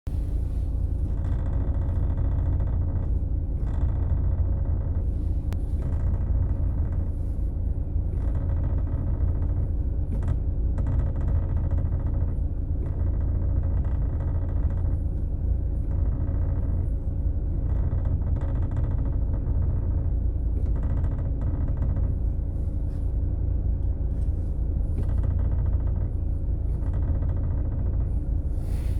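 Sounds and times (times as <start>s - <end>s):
car engine rumbling: 0.1s - 28.9s.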